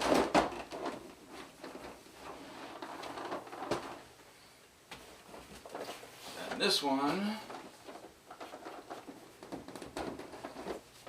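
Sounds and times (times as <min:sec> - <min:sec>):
packaging rustling: 0:05.3 - 0:11.0.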